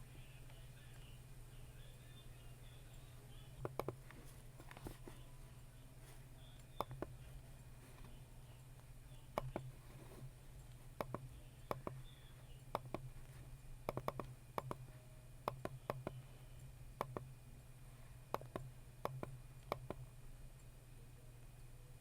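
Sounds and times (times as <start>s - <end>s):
steady low hum: 0.0s - 22.0s
computer mouse clicking: 3.6s - 4.9s, 6.6s - 7.2s, 9.3s - 9.7s, 10.6s - 13.1s, 13.9s - 16.2s, 17.0s - 17.3s, 18.3s - 20.1s.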